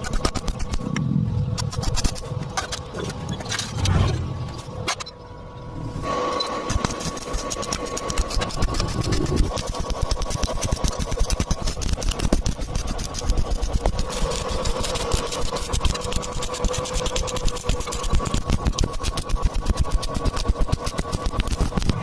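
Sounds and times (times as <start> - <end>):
steady hum: 0.0 - 22.0
welding arc crackling: 6.5 - 22.0.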